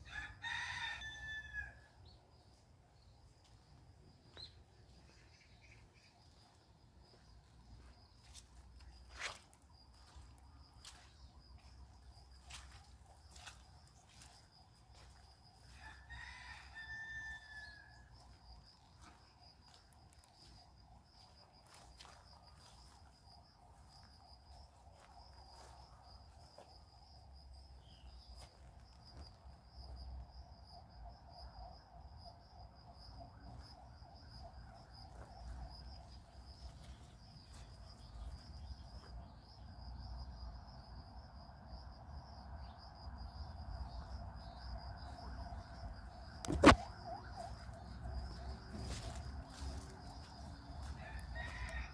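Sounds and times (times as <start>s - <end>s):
distant rooster crowing: 0.0s - 2.2s, 15.5s - 18.4s, 48.4s - 51.9s
high insect drone: 5.1s - 51.9s.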